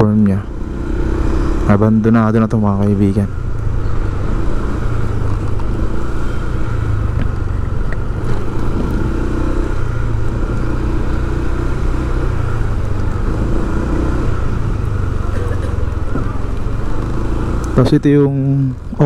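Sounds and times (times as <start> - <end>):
road noise: 0.0 - 19.0
vehicle engine rumbling: 0.0 - 19.0.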